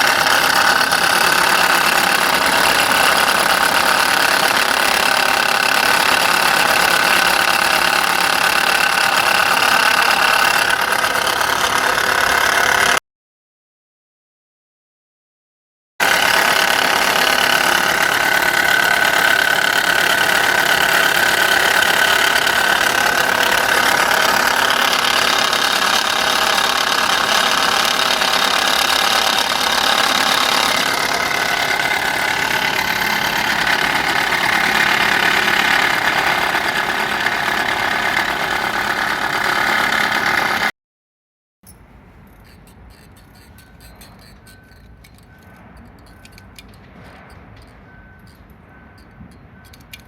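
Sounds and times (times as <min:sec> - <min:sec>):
car engine running: 0:00.0 - 0:13.0, 0:16.0 - 0:40.7.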